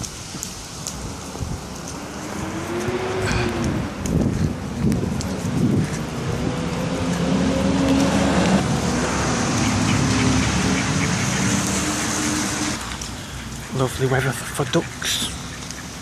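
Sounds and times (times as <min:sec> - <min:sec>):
car passing on wet road: 0:00.0 - 0:13.7
heavy rain: 0:00.0 - 0:16.0.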